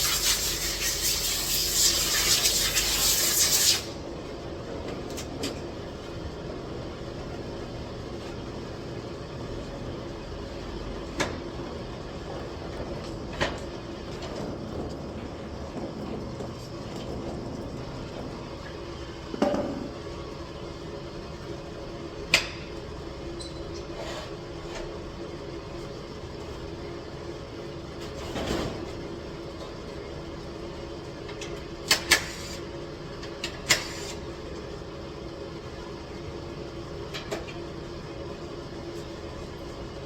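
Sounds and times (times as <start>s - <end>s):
steady hum: 0.0s - 28.0s.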